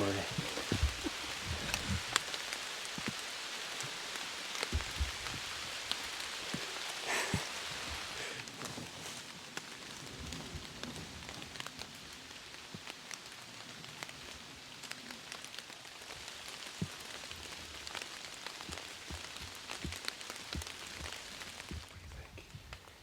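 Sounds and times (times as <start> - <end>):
low thumps: 0.0 - 2.2, 4.7 - 5.9
raindrop taps: 0.0 - 8.7, 14.8 - 23.0
rain hiss: 0.0 - 23.0.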